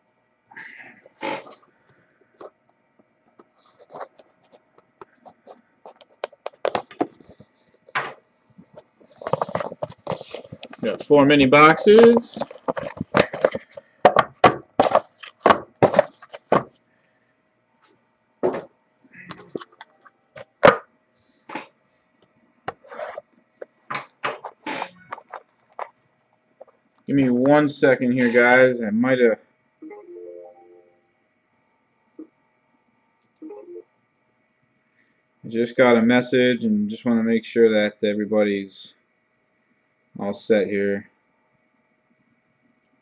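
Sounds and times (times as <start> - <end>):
cardboard boxes rustling: 8.7 - 11.2, 12.0 - 16.8
packaging crinkling and scraping: 9.0 - 11.1, 12.2 - 13.8, 14.8 - 16.7, 24.4 - 26.0.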